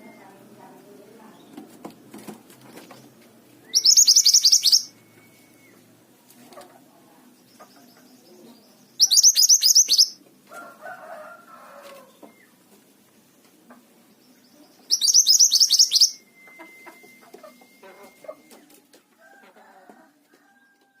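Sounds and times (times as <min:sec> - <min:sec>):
bird calls and whistle: 0:03.6 - 0:05.9, 0:08.9 - 0:10.2, 0:14.8 - 0:18.6
songbird singing rapid falling notes: 0:03.6 - 0:05.9, 0:07.2 - 0:10.2, 0:14.0 - 0:16.9.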